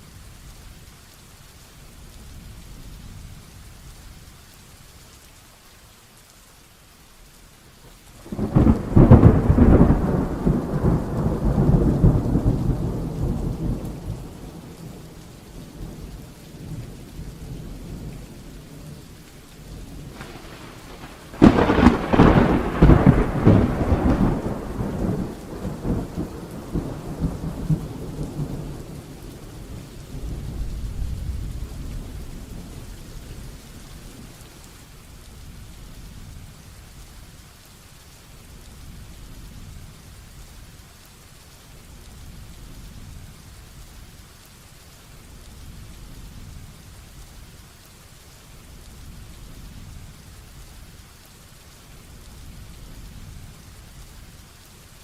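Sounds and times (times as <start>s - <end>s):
heavy rain: 0.0s - 55.0s
thunder claps and rumbling: 8.2s - 34.7s.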